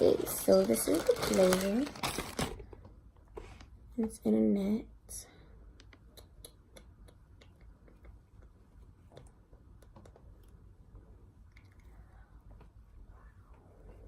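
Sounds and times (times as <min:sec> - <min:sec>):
hands handling packaging: 0:00.0 - 0:03.8.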